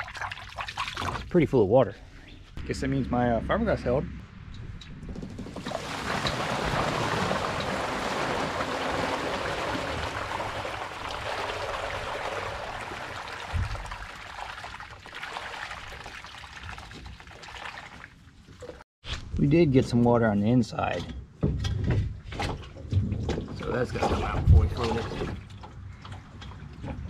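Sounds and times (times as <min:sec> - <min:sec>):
water pouring: 0:00.0 - 0:01.3, 0:05.5 - 0:18.8.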